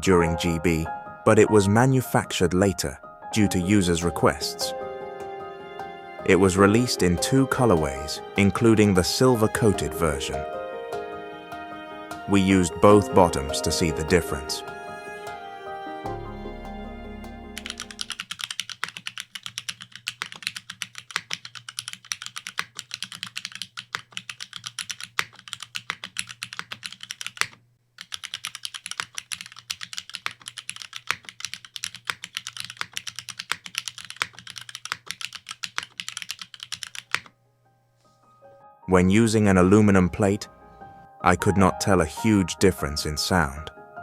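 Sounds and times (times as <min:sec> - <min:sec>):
mechanical keyboard typing: 0:17.6 - 0:37.3.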